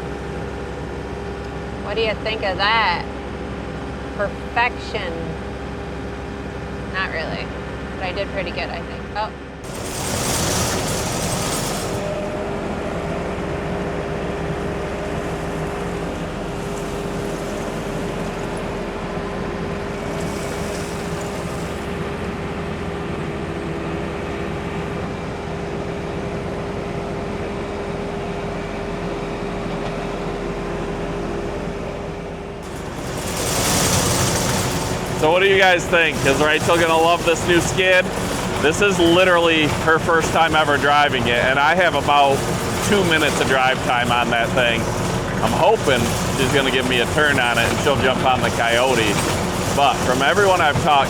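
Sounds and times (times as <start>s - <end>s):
diesel engine running: 0.0s - 51.0s
steady whine: 32.6s - 51.0s.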